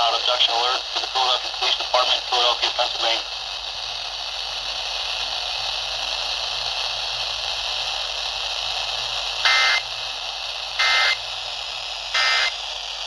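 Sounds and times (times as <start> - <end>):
radio static hiss: 0.0 - 4.0, 9.5 - 9.9, 10.8 - 11.2, 12.1 - 12.6
alert data bursts: 9.4 - 9.8, 10.8 - 11.2, 12.2 - 12.6.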